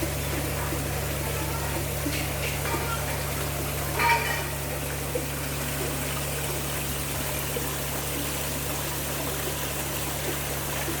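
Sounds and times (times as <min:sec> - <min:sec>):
low machine hum: 0:00.0 - 0:11.0
water running down waterfall: 0:00.0 - 0:11.0.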